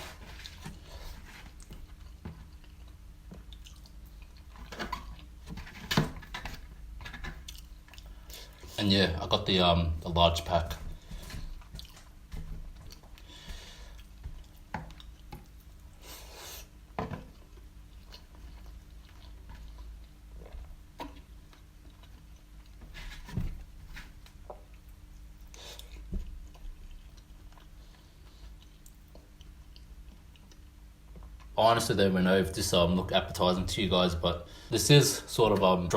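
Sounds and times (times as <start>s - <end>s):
faint steady hum: 0.0s - 35.9s
close-up chewing: 0.4s - 5.4s, 7.4s - 8.6s, 11.0s - 16.0s, 17.3s - 22.9s, 24.2s - 31.6s.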